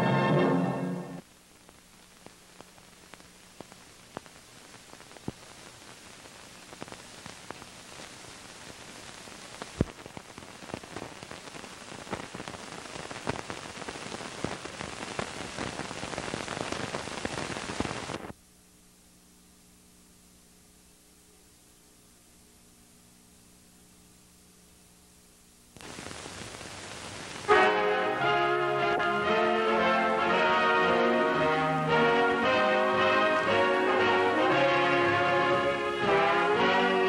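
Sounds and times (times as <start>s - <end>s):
film soundtrack crackle and pops: 0.0s - 37.0s.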